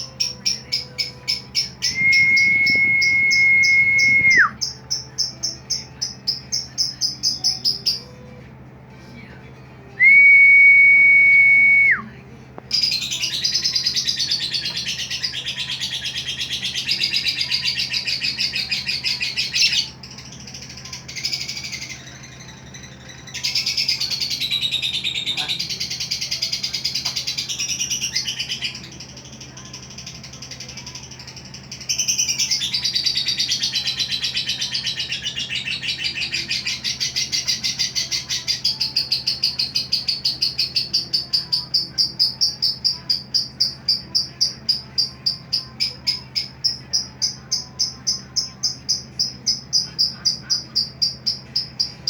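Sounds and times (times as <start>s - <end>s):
high bird trilling: 0.0s - 8.0s
long bird whistles: 1.8s - 4.7s, 10.0s - 12.0s.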